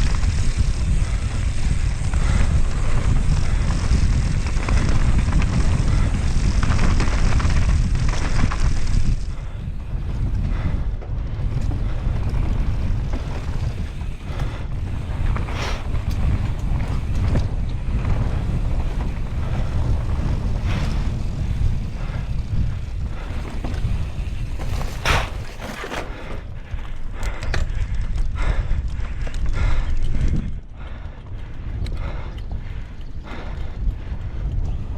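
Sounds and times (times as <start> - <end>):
tyre rumble: 0.0 - 26.8
bike rattling and knocking: 0.0 - 34.9
wind buffeting on microphone: 0.0 - 34.9.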